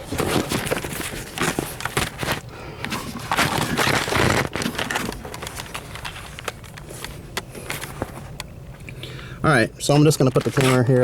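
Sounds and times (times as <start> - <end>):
camera being handled: 0.1 - 8.4.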